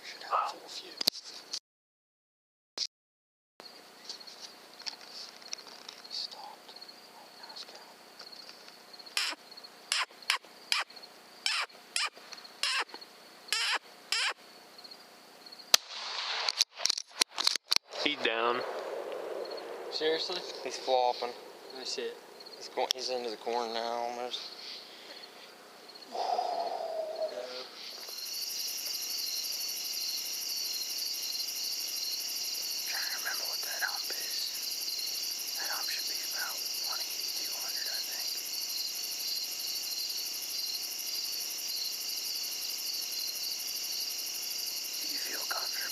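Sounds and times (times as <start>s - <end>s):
crickets chirping: 0.0s - 1.2s, 3.6s - 15.8s, 17.9s - 45.9s
sharp crack: 15.7s - 23.0s.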